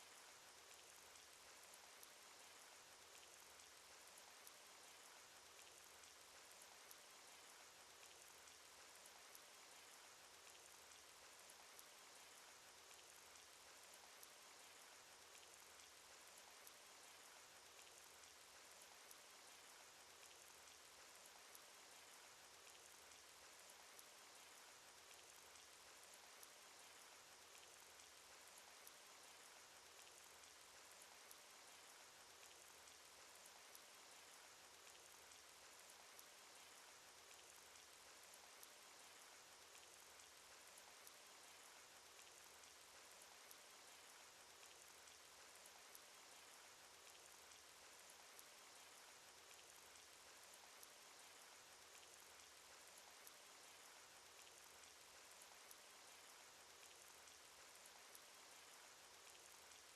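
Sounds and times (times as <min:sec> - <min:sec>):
raindrops ticking: 0:00.6 - 0:59.9.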